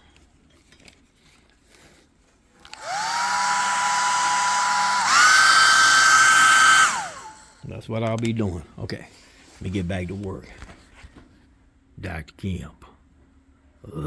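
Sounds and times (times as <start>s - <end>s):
heat gun fan whining: 2.6s - 8.3s.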